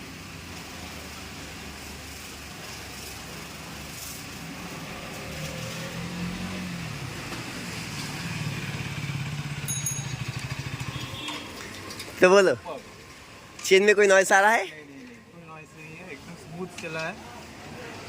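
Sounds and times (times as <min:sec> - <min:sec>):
motorcycle engine running: 0:08.2 - 0:12.2.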